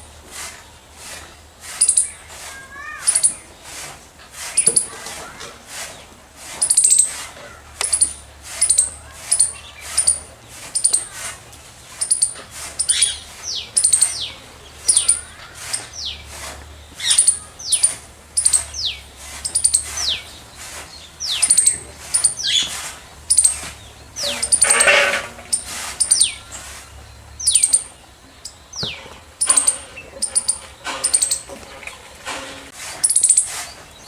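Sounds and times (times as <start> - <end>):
squirrel chirping: 1.7 - 2.2, 2.9 - 3.5, 4.5 - 5.0, 6.6 - 31.5, 33.0 - 33.8.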